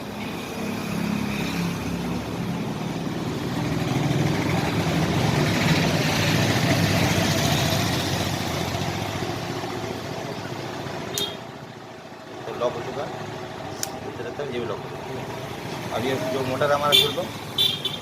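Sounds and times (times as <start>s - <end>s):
road noise: 0.0s - 18.0s
vehicle engine passing by: 0.1s - 11.1s.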